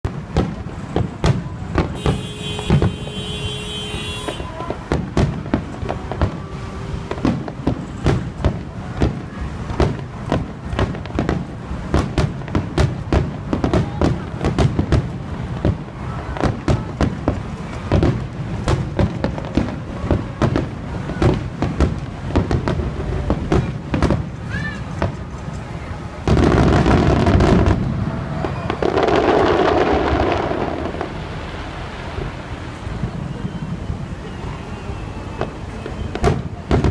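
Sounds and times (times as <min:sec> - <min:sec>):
fireworks bangs and booms: 0:00.0 - 0:36.9
continuous low rumble: 0:04.2 - 0:36.9.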